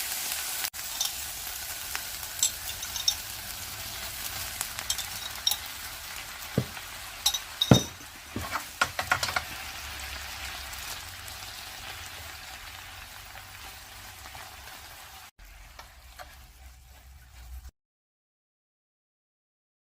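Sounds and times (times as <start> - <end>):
meat sizzling in a frying pan: 0.0 - 17.7
utensil clacking on pan: 2.4 - 3.2, 4.8 - 5.7, 6.5 - 9.6.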